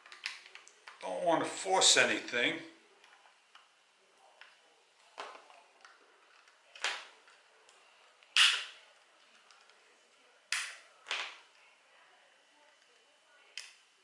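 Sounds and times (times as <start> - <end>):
plastic clicks and snaps: 0.0 - 1.0, 5.2 - 9.8, 10.5 - 11.5, 13.5 - 13.9.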